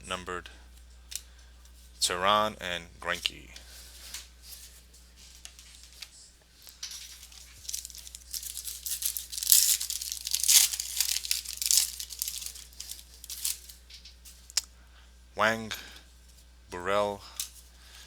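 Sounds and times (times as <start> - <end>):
wrapper tearing and crinkling: 6.6 - 14.6.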